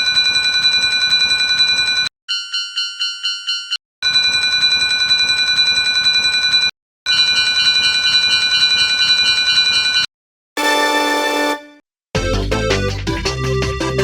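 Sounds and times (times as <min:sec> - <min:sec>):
railroad crossing alarm ringing: 0:10.6 - 0:11.7.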